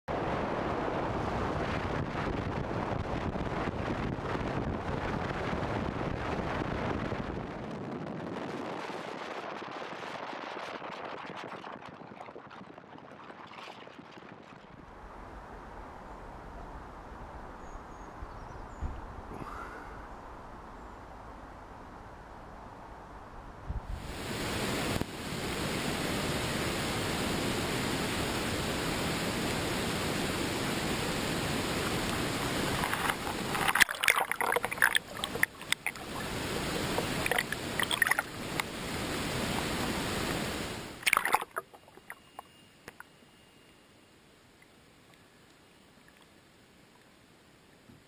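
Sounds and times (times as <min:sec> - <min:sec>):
water rushing: 0:24.0 - 0:43.1
sharp splashes: 0:31.8 - 0:43.1.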